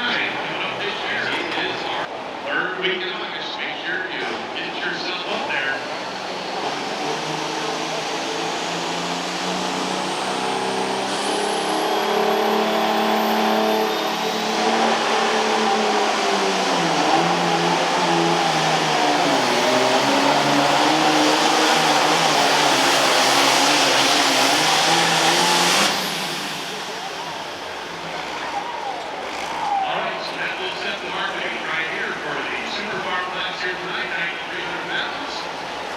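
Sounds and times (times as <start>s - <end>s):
diesel tractor engine under load: 5.5s - 31.6s
high turbocharger whine: 5.8s - 33.5s.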